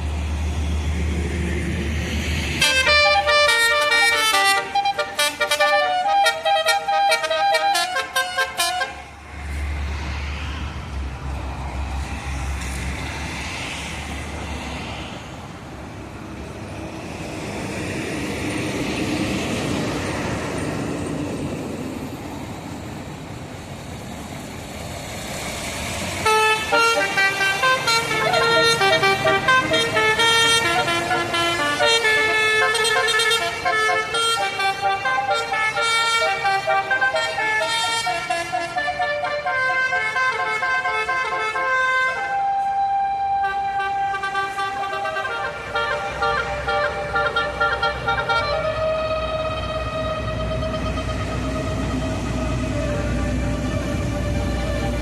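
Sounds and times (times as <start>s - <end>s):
vehicle passing by: 0.0s - 4.8s, 8.9s - 40.2s, 41.7s - 55.0s
road traffic passing: 0.0s - 55.0s
bus horn playing a tune: 2.6s - 9.2s, 26.2s - 55.0s.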